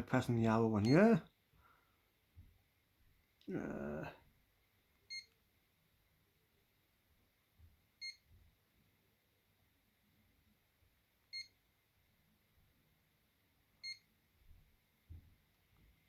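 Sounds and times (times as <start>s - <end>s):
phone keypad beeps: 0.8s - 1.2s, 11.3s - 11.5s.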